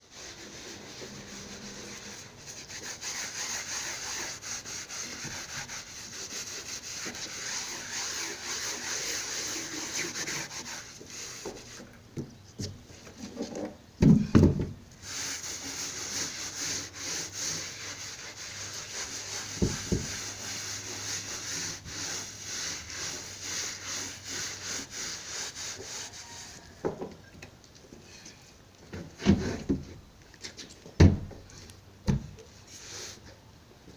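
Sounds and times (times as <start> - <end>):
carpet being scrubbed: 0.0 - 11.9, 15.0 - 26.7.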